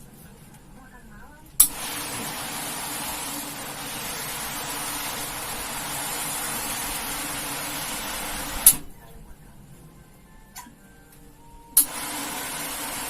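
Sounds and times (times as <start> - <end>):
faint motor hum: 0.0 - 13.0
pressure washer spraying water: 1.6 - 8.9, 11.8 - 13.0.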